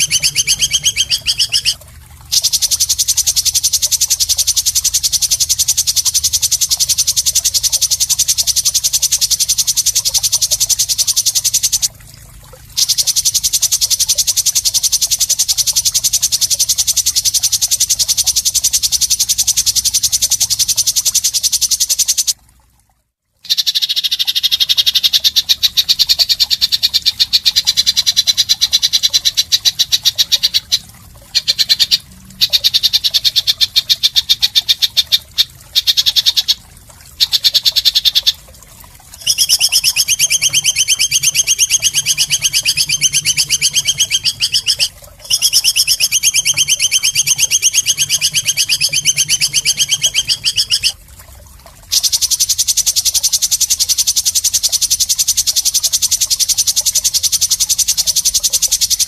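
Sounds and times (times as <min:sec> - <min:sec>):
deeper-toned bird trill: 0:00.0 - 0:11.9, 0:23.4 - 0:30.8, 0:39.2 - 0:51.0.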